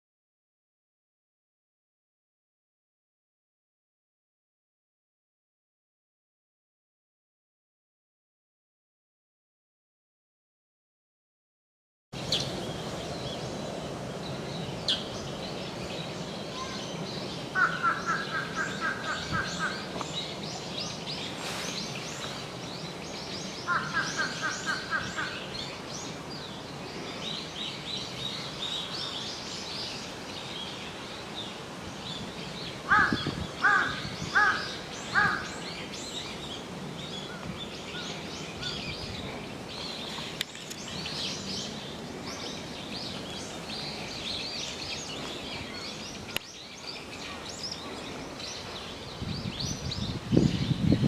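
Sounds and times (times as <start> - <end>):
small birds chirping: 12.2 - 51.0
crow cawing: 17.6 - 19.8, 23.7 - 25.4, 32.9 - 35.5.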